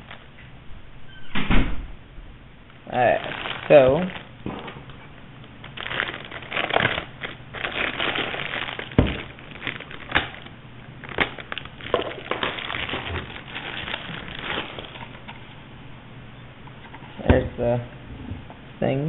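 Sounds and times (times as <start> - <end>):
packaging rustling and crinkling: 0.0 - 0.3, 2.8 - 15.6.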